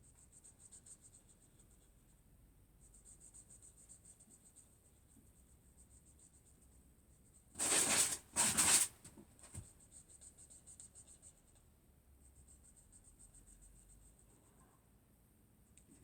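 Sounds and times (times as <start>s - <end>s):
coloring strokes on paper: 7.6s - 9.0s.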